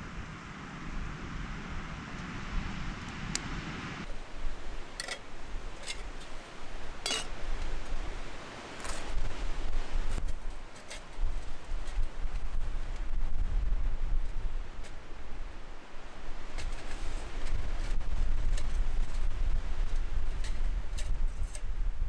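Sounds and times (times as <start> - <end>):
wind rumble on microphone: 0.0 - 22.0
small metal objects clinking: 4.1 - 8.0.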